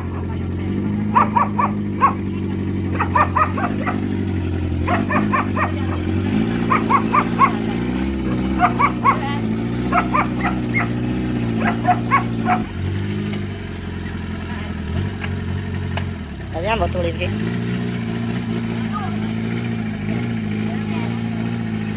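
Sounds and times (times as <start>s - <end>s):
dog barking: 0.0s - 0.4s, 1.1s - 2.2s, 2.9s - 4.1s, 4.8s - 7.7s, 8.3s - 11.0s, 11.6s - 12.7s
engine running: 0.0s - 21.9s.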